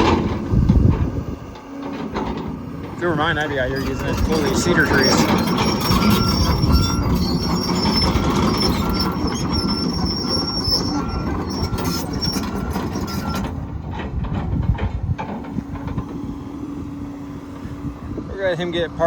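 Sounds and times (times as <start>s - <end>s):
diesel engine running: 0.0s - 19.0s
excavator tracks clanking and squealing: 0.0s - 19.0s
travel alarm beeping: 2.6s - 13.6s.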